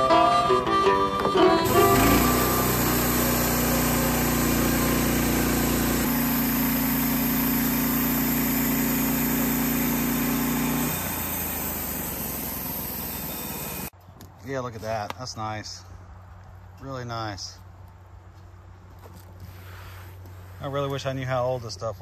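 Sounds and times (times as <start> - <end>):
background music: 0.0 - 2.2
sawmill gas engine running: 1.6 - 13.9.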